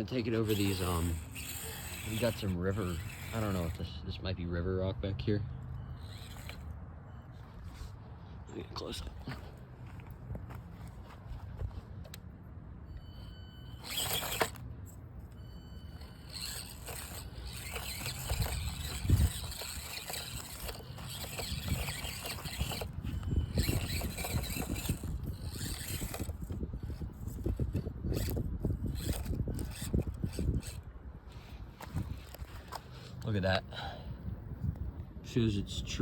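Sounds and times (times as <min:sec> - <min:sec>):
small electric motor whining: 0:00.0 - 0:04.5, 0:05.7 - 0:07.4, 0:12.8 - 0:33.4
tyres scraping on stone: 0:00.2 - 0:03.8, 0:13.8 - 0:14.6, 0:16.0 - 0:33.2.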